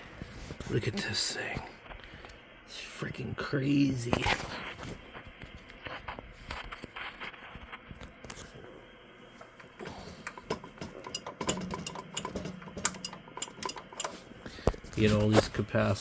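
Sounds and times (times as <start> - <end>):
hands clicking and tapping on metal: 9.6 - 14.8.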